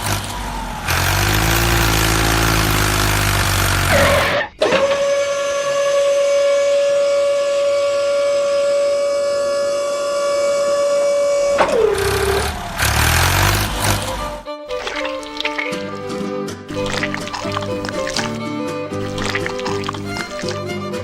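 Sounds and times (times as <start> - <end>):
engine rumble: 0.0 - 4.4, 11.4 - 18.4.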